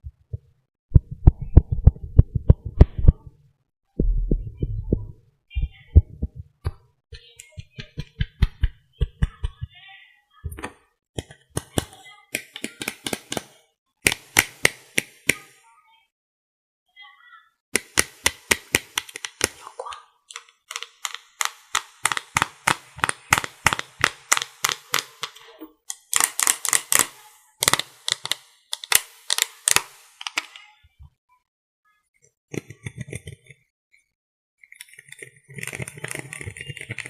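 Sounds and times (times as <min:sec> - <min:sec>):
tapping on hard objects: 0:20.4 - 0:30.6.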